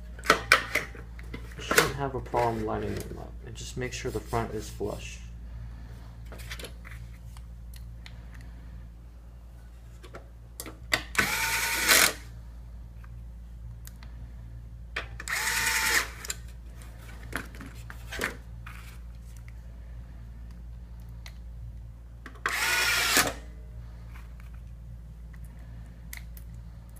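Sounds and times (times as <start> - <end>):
electric screwdriver whining: 11.2 - 12.2, 15.2 - 16.2, 22.4 - 23.4.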